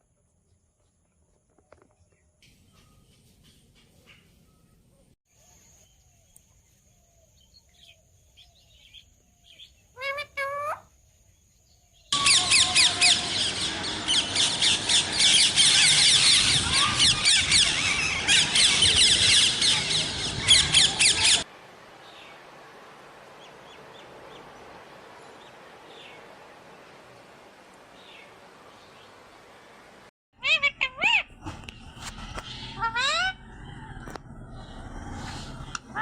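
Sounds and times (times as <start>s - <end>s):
chorus of birds chirping: 2.1s - 36.0s
parrot calls: 9.9s - 10.8s, 12.2s - 21.5s, 30.4s - 34.0s.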